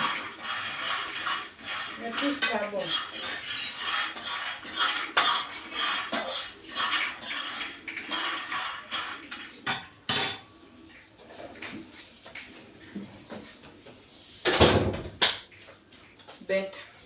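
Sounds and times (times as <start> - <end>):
dishes and cutlery clattering: 2.2 - 10.6.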